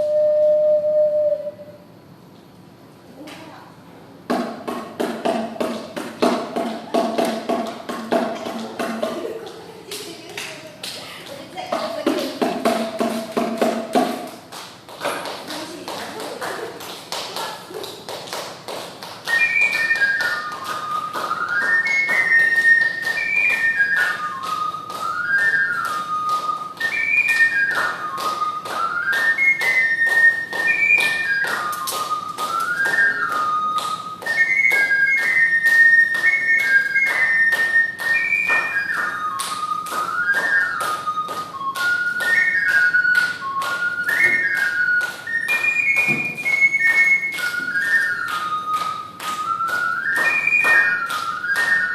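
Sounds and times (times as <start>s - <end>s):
ocarina melody: 0.0s - 2.0s, 19.2s - 51.9s.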